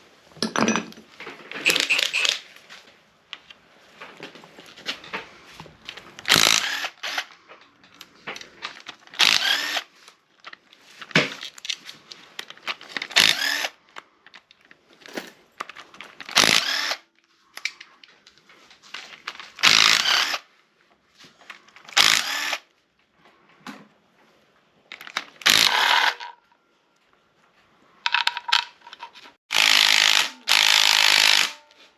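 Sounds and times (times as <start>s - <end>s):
metal parts clicking and clattering: 0.4s - 2.5s
cordless power tool spinning: 1.6s - 2.4s, 6.2s - 7.3s, 9.2s - 9.9s, 13.1s - 13.8s, 16.3s - 17.0s, 19.6s - 20.5s, 21.9s - 22.6s, 25.4s - 26.3s, 29.5s - 31.6s.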